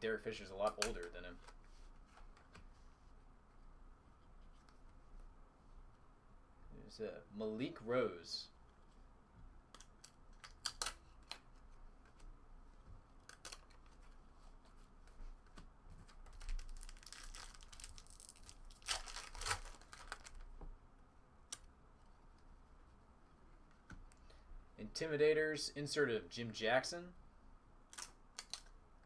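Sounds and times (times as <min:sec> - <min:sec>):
crackling rubbing of cards: 0:13.0 - 0:20.6
cards clicking and flicking: 0:13.2 - 0:13.9, 0:27.9 - 0:28.8.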